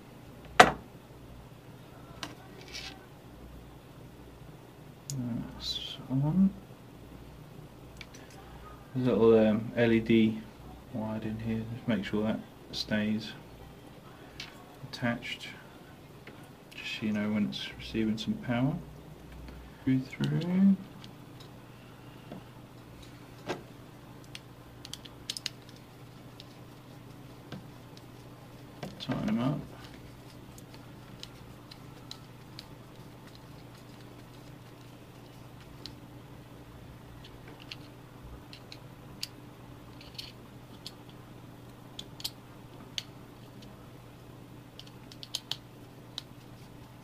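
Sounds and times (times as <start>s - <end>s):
faint steady hum: 0.0s - 47.0s
small plastic and metal parts clicking: 24.2s - 25.8s, 38.5s - 41.2s, 44.8s - 45.6s.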